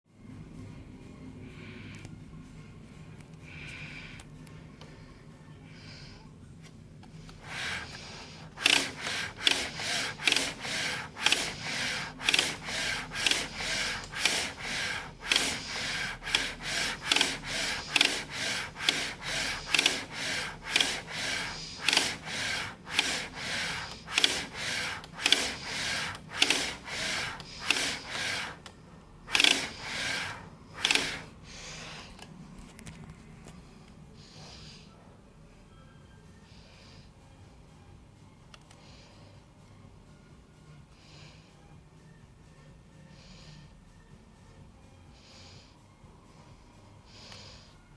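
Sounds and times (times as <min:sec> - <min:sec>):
printer carriage moving back and forth: 0:07.3 - 0:28.7, 0:29.3 - 0:31.7.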